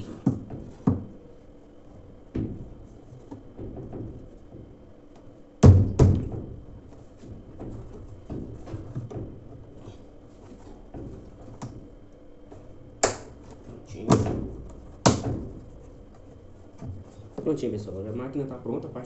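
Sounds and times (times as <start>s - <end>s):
sharp knocks: 5.6s - 10.0s, 13.0s - 16.0s.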